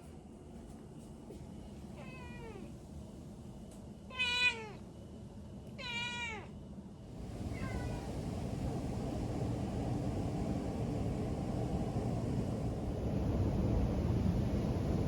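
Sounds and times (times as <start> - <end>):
cat meowing: 2.0 - 2.7, 4.1 - 4.8, 5.8 - 6.5, 7.5 - 8.1
low hum of traffic: 5.8 - 15.0.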